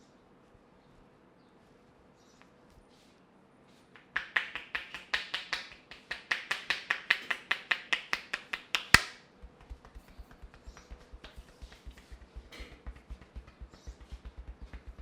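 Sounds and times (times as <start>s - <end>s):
fast sharp clicks: 4.0s - 15.0s.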